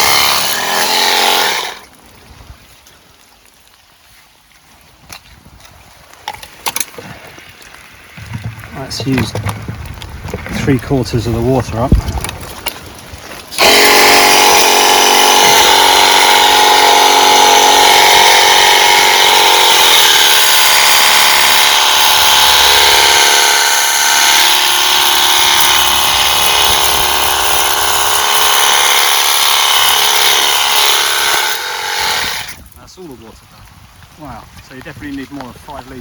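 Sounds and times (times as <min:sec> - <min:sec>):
electric pump hum: 0:00.0 - 0:01.9, 0:13.6 - 0:32.6
water jet spraying: 0:13.3 - 0:32.6.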